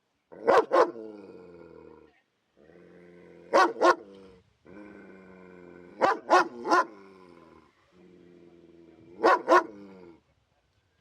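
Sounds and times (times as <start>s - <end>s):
dog growling: 1.0s - 10.2s
dog barking sharply: 9.2s - 9.7s.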